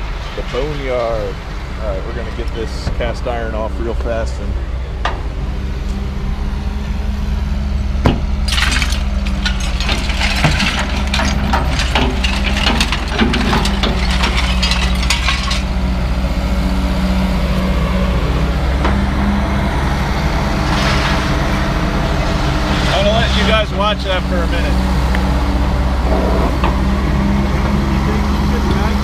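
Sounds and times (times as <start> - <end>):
heavy engine running: 0.0 - 29.0
scrap metal clattering: 8.4 - 15.9.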